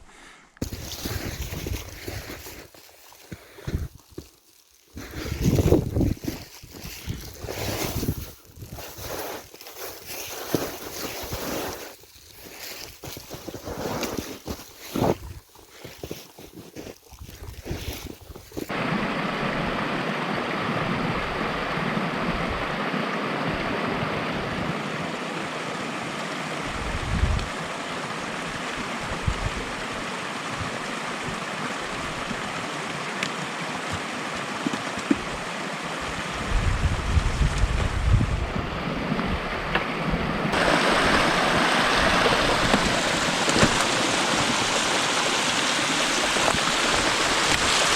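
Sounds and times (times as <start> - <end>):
wind buffeting microphone: 26.7 - 27.5, 29.0 - 29.8, 36.4 - 43.1.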